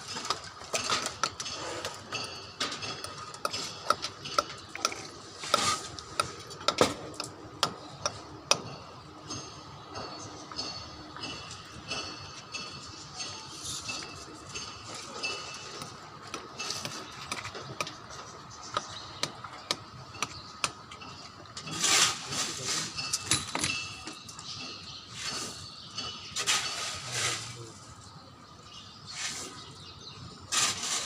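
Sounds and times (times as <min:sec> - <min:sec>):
metal clinks: 0:22.9 - 0:25.0.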